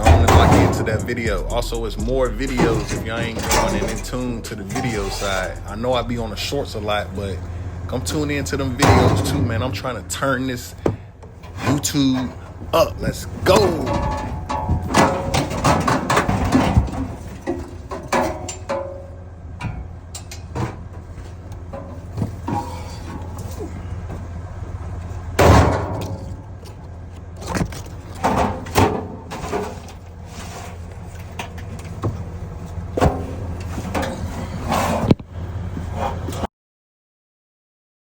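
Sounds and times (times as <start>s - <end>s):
heavy thud: 0.0s - 5.7s, 8.8s - 10.0s, 10.8s - 11.8s
knocks and clanks: 0.0s - 36.5s
vehicle engine and road hum: 0.0s - 36.5s.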